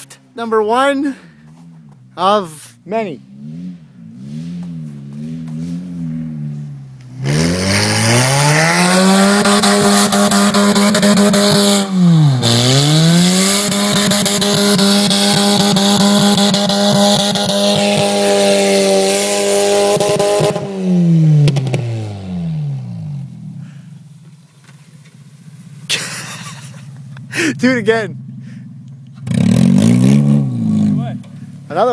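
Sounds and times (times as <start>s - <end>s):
car engine revving hard: 3.2s - 23.3s, 29.2s - 31.1s.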